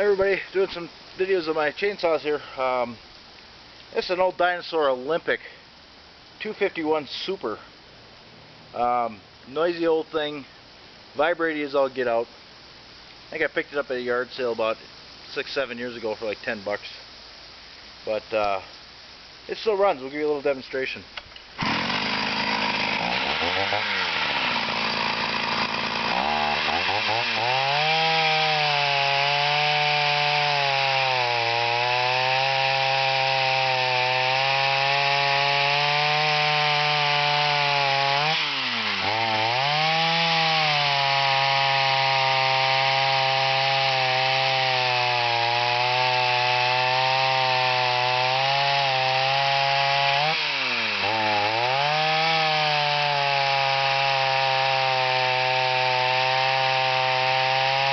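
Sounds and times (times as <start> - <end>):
two-stroke chainsaw revving: 21.6 - 57.9.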